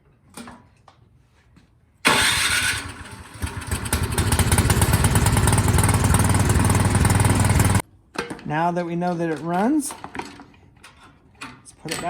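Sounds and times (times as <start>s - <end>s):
snowblower engine running: 2.1s - 7.8s.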